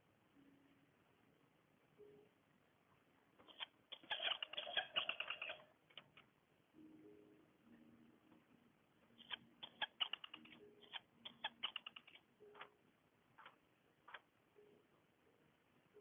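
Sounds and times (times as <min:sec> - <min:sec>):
faint low hum: 0:00.0 - 0:16.0.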